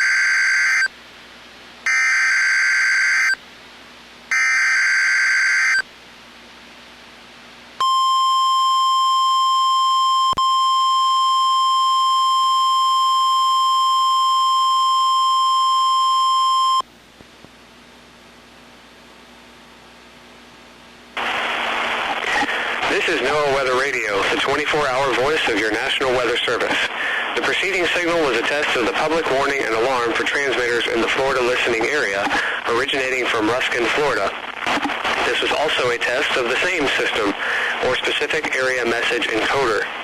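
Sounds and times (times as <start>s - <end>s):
steady warning alarm tone: 0.0s - 0.9s, 1.9s - 3.4s, 4.3s - 5.8s
faint radio hiss: 0.9s - 1.9s, 3.4s - 4.4s, 5.8s - 8.5s, 16.8s - 40.0s.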